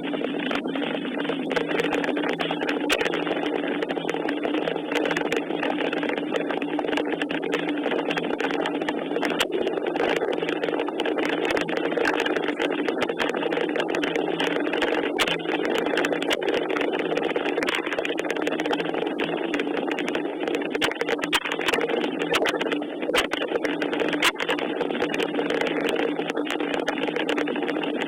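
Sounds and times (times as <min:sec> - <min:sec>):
low steady hum: 0:00.0 - 0:28.0
raindrops clicking on surface: 0:00.0 - 0:28.0.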